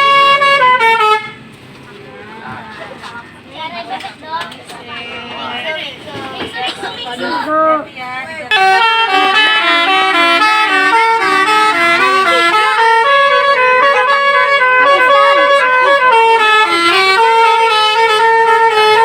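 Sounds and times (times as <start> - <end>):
air horn playing melody: 0.0 - 1.4, 7.2 - 7.9, 8.5 - 19.0.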